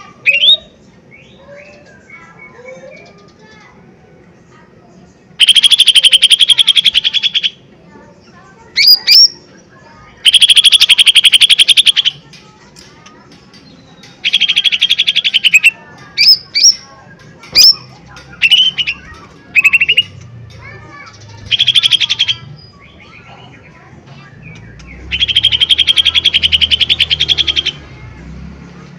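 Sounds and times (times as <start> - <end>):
bird rattling trills: 5.4 - 7.5, 10.2 - 22.5.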